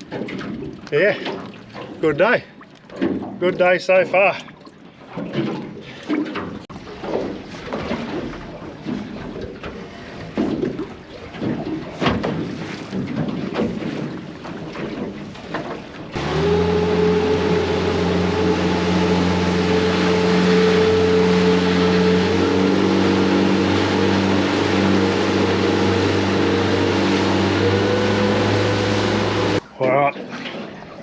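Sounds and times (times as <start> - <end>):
boat motor running: 16.1 - 29.9.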